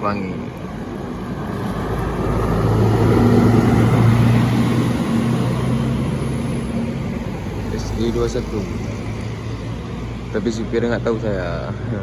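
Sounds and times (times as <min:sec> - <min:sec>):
bus engine drone: 0:00.0 - 0:12.0
tyre and road noise: 0:00.0 - 0:12.0.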